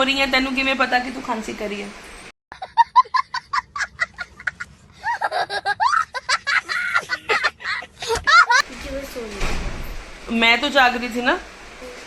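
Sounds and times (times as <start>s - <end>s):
person laughing: 2.5s - 8.6s.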